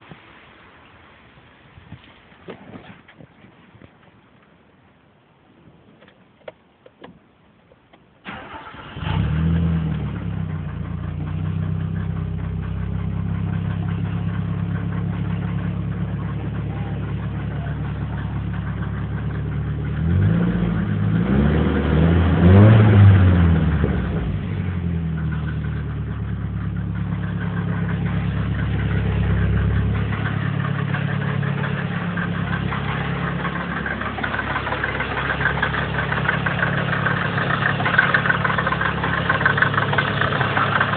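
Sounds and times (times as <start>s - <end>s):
engine cranking and idling: 7.8s - 40.9s
engine revving: 8.3s - 40.9s.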